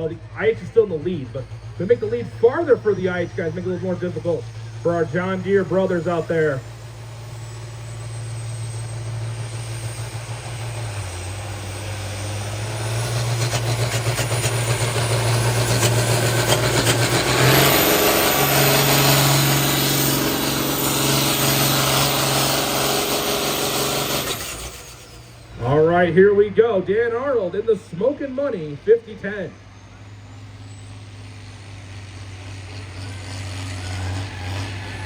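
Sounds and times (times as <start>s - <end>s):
tractor engine under load: 0.0s - 35.0s.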